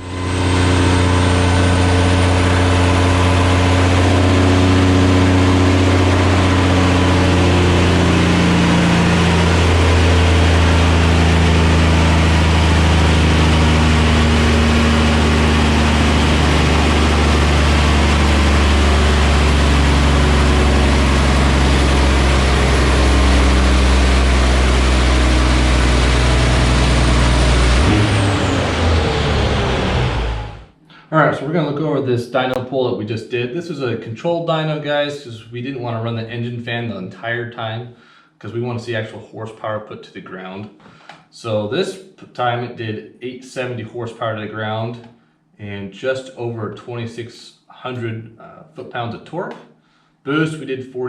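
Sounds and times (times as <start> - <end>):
diesel engine running under load: 0.0 - 30.7.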